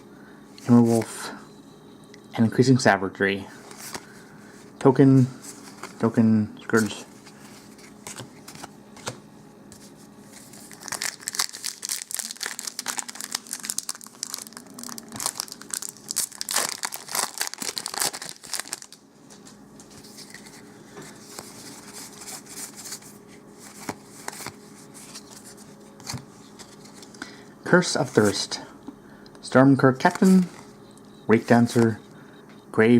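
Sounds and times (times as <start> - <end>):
rustles and clicks of handling: 3.6 - 11.2, 18.1 - 27.2
wrapper crinkling and tearing: 10.4 - 19.0.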